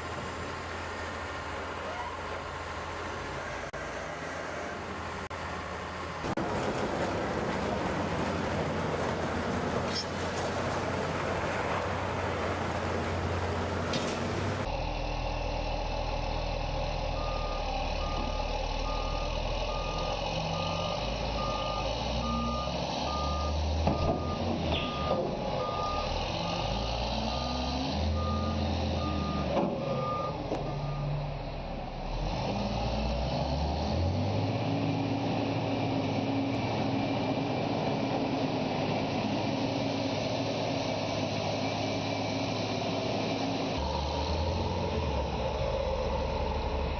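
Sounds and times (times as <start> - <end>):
diesel engine revving: 0.0 - 46.9
reversing alarm beeping: 17.2 - 31.2.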